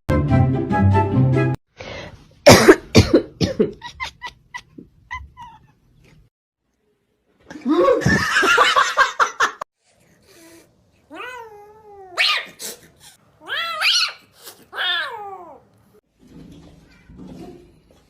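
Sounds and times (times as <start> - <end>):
cat yowling: 10.4 - 12.6, 13.4 - 15.7
cat meowing: 11.1 - 12.6, 13.4 - 15.7.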